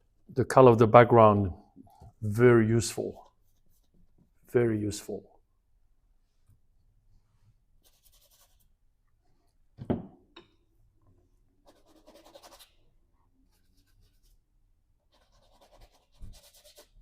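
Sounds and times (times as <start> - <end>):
paintbrush scrubbing canvas: 3.2 - 4.2, 7.3 - 8.8, 11.6 - 12.8, 13.4 - 17.0.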